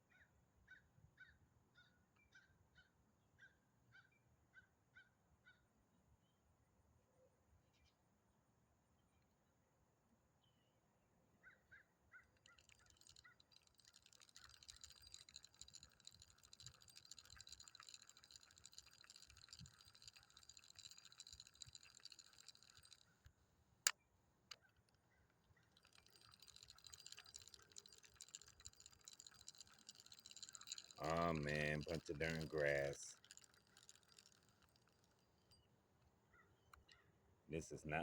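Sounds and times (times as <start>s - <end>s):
fishing reel cranking whir: 12.4s - 23.3s, 25.7s - 35.6s
sharp clicks: 12.4s - 25.0s, 25.7s - 35.6s.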